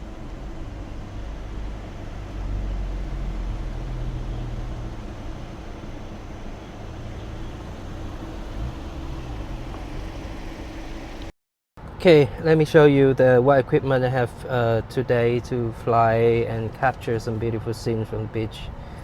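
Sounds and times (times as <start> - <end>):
steady low rumble: 0.0 - 11.3
faint constant hum: 0.0 - 19.0.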